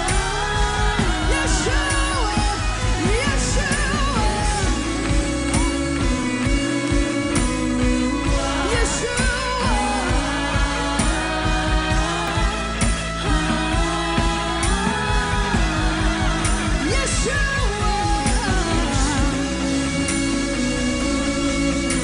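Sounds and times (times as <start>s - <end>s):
live band music: 0.0s - 22.0s.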